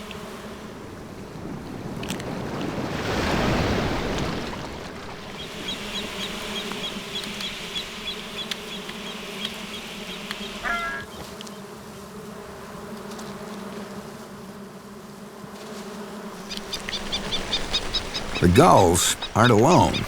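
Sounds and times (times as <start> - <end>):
flies buzzing: 5.5 - 20.0
brief call: 18.4 - 20.0.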